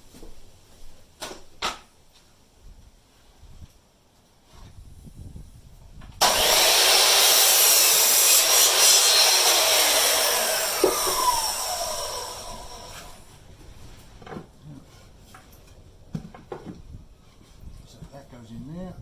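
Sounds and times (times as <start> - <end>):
electric power saw cutting wood: 6.2 - 13.3.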